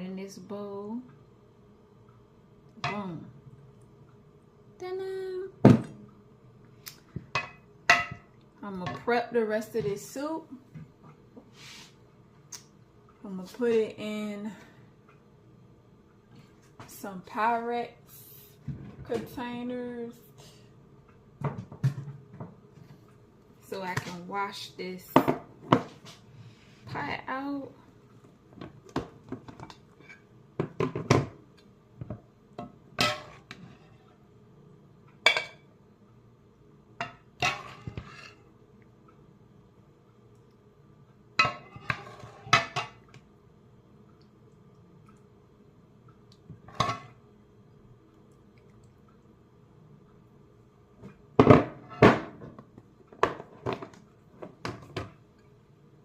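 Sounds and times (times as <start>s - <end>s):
kitchenware clunking: 7.3s - 9.2s, 35.2s - 35.6s, 41.4s - 43.0s.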